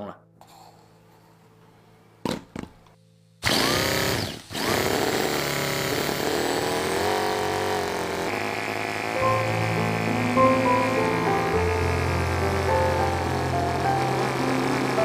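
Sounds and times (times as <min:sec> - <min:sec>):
model car engine revving: 0:03.4 - 0:15.0.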